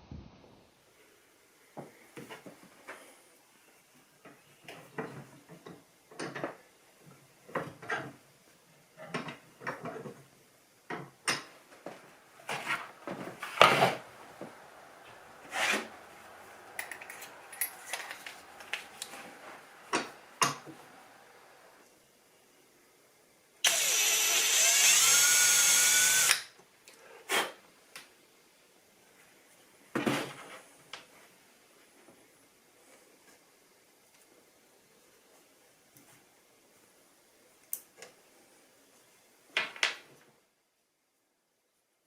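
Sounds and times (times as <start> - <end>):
small objects knocking on hard surface: 12.4 - 21.5.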